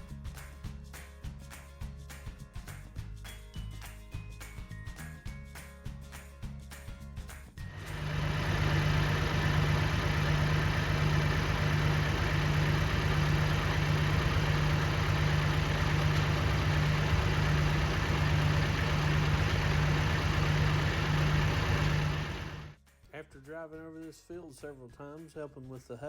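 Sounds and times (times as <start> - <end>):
vehicle engine droning: 7.7 - 22.7.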